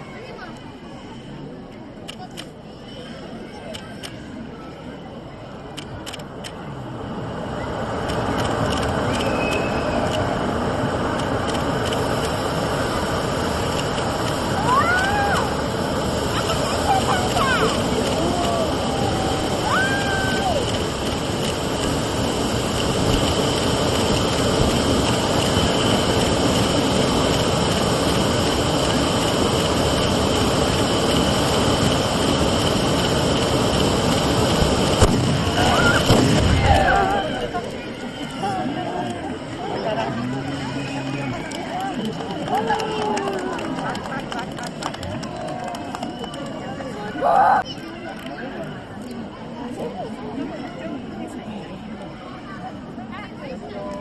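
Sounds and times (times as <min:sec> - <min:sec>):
sharp firework crackles: 0:07.7 - 0:37.8
firework spraying sparks hiss: 0:07.8 - 0:37.8
sharp bang: 0:35.0 - 0:36.8.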